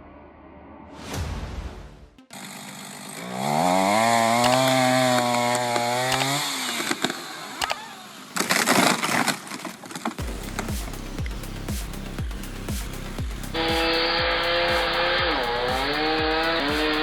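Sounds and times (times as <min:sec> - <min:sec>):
chainsaw revving: 0:02.3 - 0:09.2, 0:13.5 - 0:17.0
sharp cracks and knocks: 0:04.3 - 0:07.8, 0:08.4 - 0:10.8.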